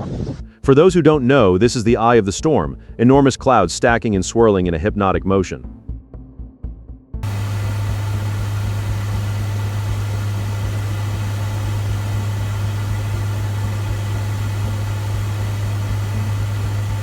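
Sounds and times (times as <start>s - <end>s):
low engine drone: 7.2s - 17.0s
rushing hiss: 7.2s - 17.0s.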